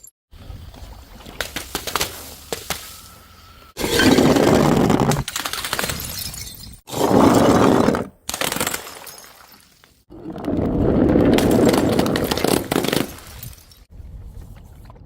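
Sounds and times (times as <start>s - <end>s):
glass bottles smashing: 3.8s - 4.7s, 5.8s - 6.9s, 8.5s - 9.8s, 11.4s - 13.9s
glass shards crunching and clattering: 5.9s - 6.8s.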